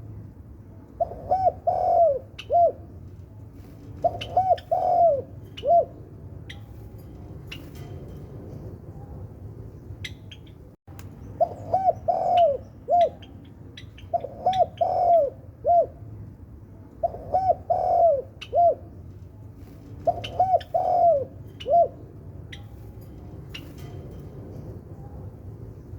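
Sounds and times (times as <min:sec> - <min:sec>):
dove cooing: 0:01.0 - 0:02.9, 0:03.9 - 0:06.6, 0:11.4 - 0:16.0, 0:17.0 - 0:19.0, 0:19.9 - 0:22.6.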